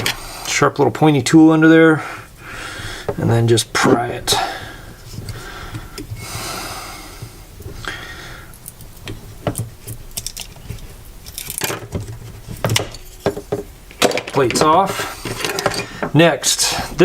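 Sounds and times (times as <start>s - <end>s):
hand tool prying and scraping: 8.6s - 16.2s.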